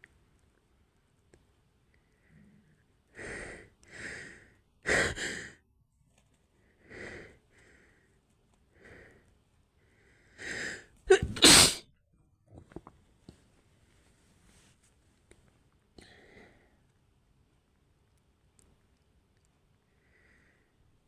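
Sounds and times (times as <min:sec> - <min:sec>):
woman sneezing: 0:11.1 - 0:11.8.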